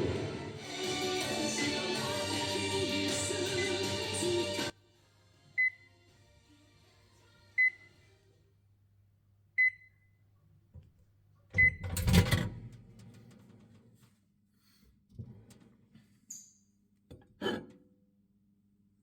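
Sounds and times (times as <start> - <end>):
loud burst of noise: 0.0 - 1.7.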